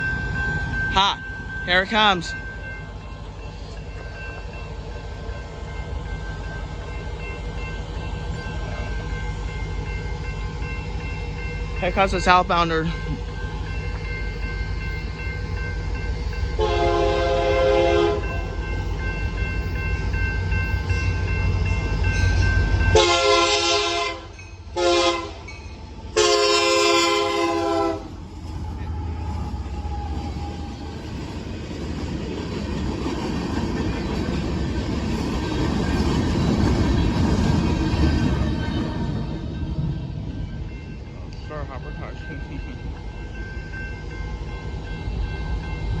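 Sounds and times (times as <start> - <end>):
diesel locomotive engine rumble: 0.0 - 46.0
freight cars rolling on rails: 0.0 - 46.0
train horn blasts: 16.5 - 18.4, 22.9 - 25.5, 26.2 - 28.2.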